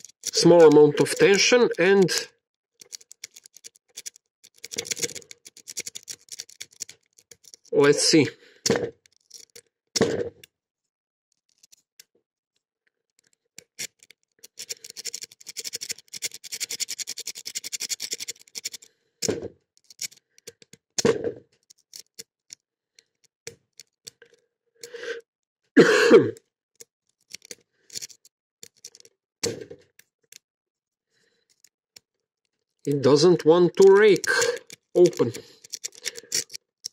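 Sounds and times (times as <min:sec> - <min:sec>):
lock pick clicking in padlock: 0:00.0 - 0:07.7, 0:09.0 - 0:09.6, 0:13.2 - 0:18.9, 0:19.8 - 0:25.0, 0:26.8 - 0:29.1, 0:32.8 - 0:36.9.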